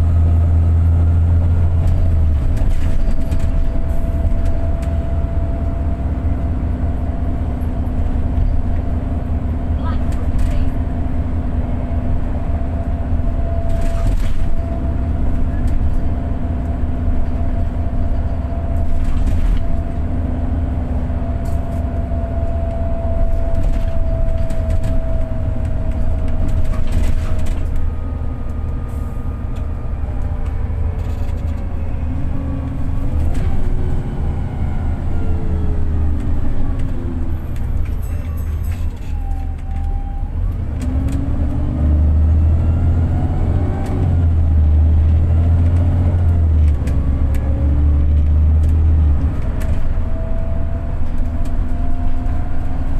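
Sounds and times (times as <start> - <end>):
bus driveline rumble: 0.0 - 52.9
bus body knocks and rattles: 23.3 - 27.9.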